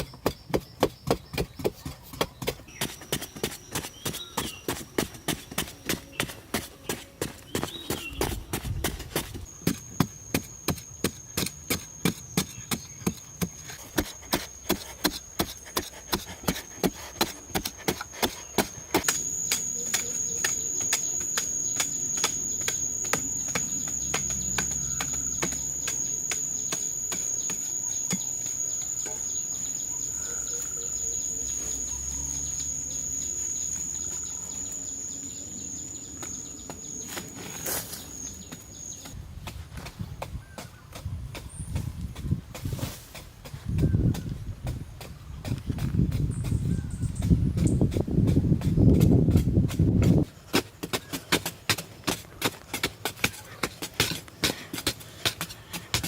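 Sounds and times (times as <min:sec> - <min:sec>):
insects chirring: 0:09.2 - 0:39.2.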